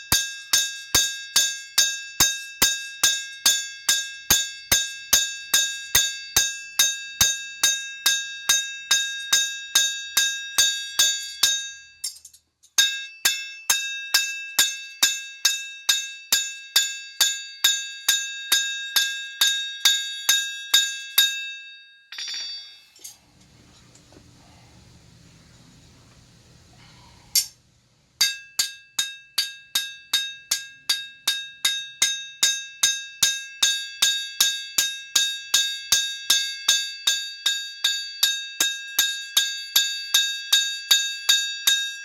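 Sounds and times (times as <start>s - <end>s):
hammer striking steel on anvil: 0.0s - 23.2s, 27.3s - 27.6s, 28.2s - 41.9s
faint low hum: 23.0s - 28.2s.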